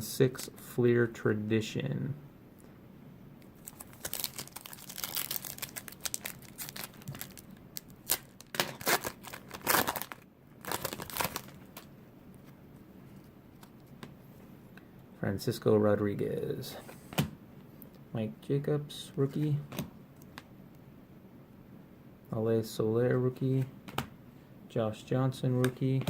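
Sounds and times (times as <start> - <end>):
wrapper tearing and crinkling: 3.6 - 11.9.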